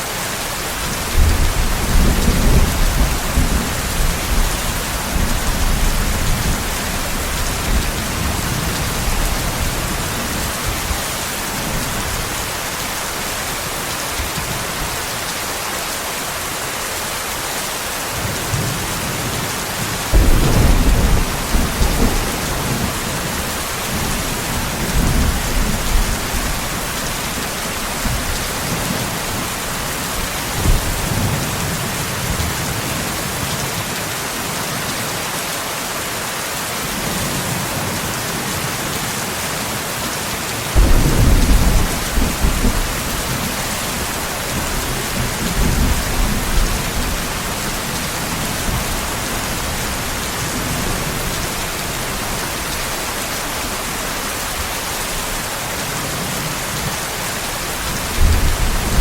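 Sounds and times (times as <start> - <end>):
heavy rain: 0.0 - 59.0
rolling thunder: 20.1 - 31.8, 40.8 - 51.2.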